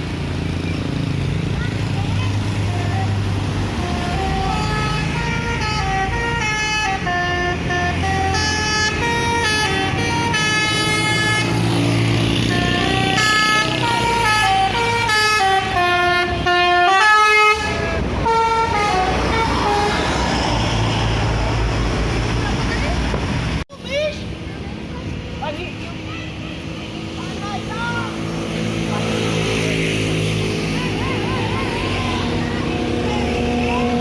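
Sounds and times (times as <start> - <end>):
bus engine humming: 0.0 - 34.0
multi-tone bus air horn tune: 2.7 - 20.3.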